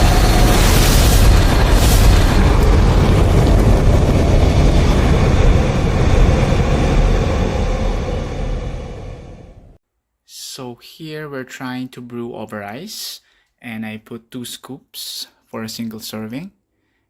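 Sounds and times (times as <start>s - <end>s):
loud bass rumble: 0.0s - 9.8s.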